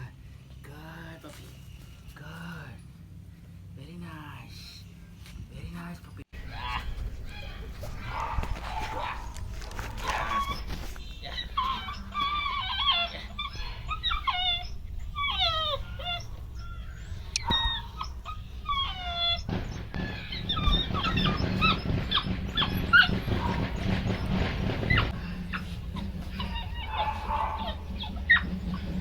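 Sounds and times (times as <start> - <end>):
low rumbling noise: 6.4 - 29.0
puppies whining and yelping: 6.4 - 29.0.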